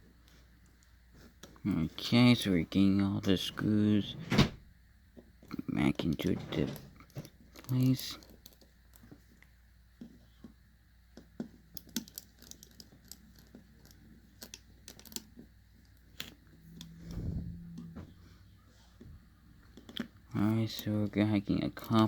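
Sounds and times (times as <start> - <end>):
screwdriver and tiny screws clicking: 11.2 - 16.9.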